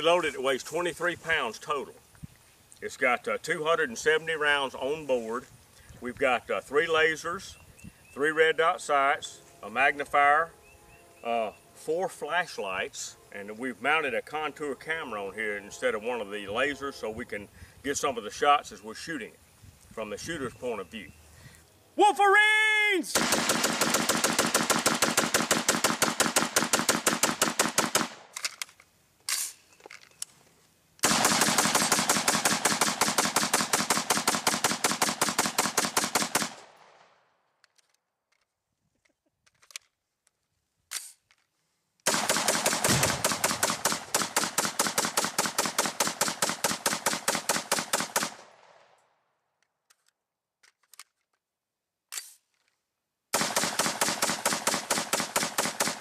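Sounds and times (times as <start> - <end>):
rifle firing rapid shots: 23.2 - 28.2, 31.0 - 37.0, 42.1 - 48.7, 53.4 - 56.0
single gunshots: 42.1 - 48.8.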